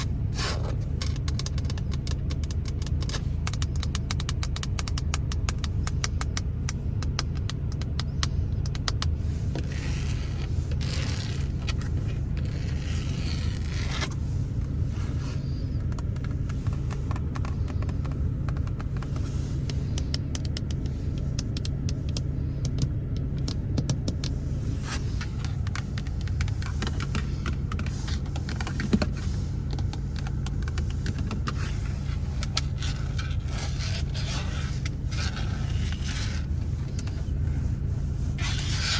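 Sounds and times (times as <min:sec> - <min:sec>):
steady low rumble: 0:00.0 - 0:38.9
light finger taps: 0:15.9 - 0:24.4
scraping: 0:24.4 - 0:38.9.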